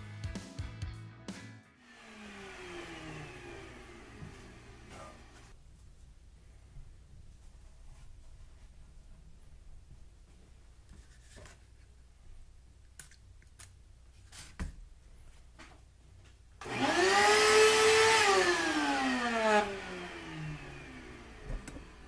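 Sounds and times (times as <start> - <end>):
shop vac motor whine: 1.8 - 5.5, 16.6 - 22.0.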